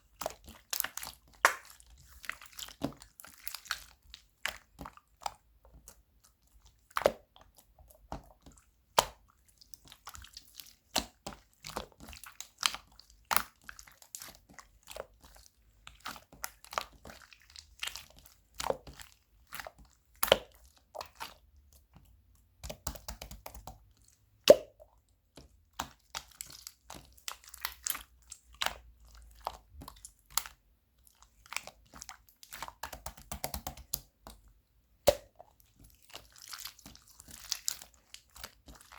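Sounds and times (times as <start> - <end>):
slime squeezed with sticky clicks: 35.0 - 38.9.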